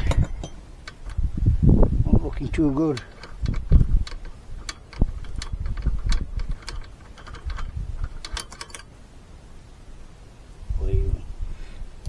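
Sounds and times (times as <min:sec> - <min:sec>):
socket wrench clicking: 0:00.0 - 0:08.9.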